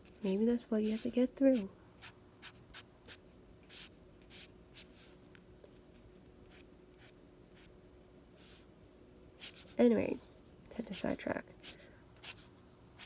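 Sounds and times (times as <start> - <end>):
drawing tool scratching paper: 0.0 - 2.8.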